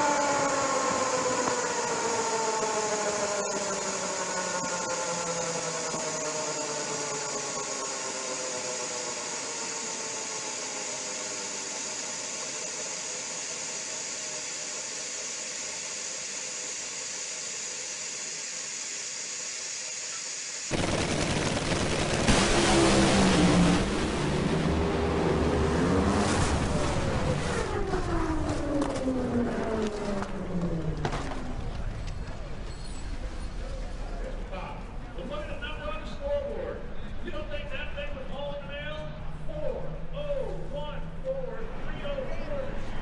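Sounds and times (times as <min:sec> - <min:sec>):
rush of noise: 0:00.0 - 0:30.6
engine whine falling in pitch: 0:00.0 - 0:33.2.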